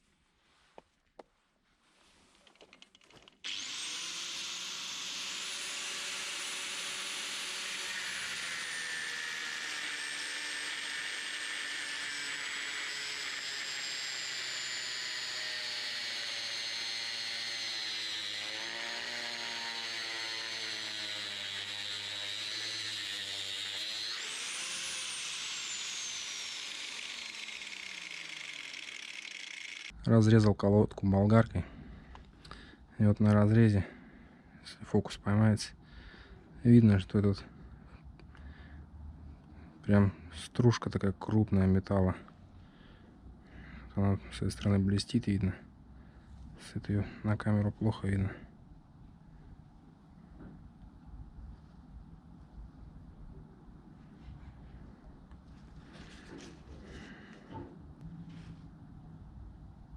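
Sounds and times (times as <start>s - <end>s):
angle grinder cutting: 3.4s - 30.0s.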